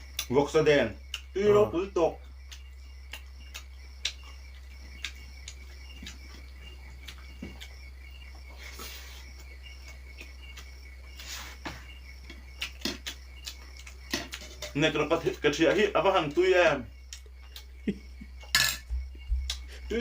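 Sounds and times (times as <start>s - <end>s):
high insect-like chirps: 0.0s - 20.0s
low steady hum: 11.8s - 20.0s.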